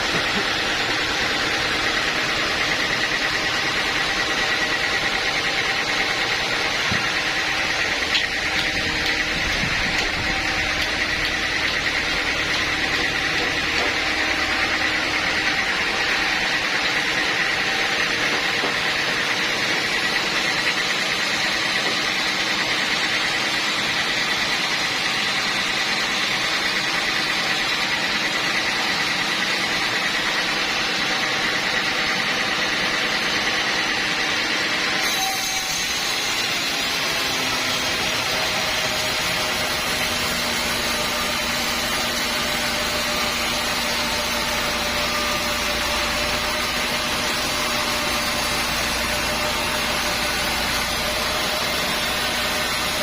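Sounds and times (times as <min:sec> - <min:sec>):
engine hum: 0:00.0 - 0:23.4
high machine whine: 0:00.0 - 0:53.0.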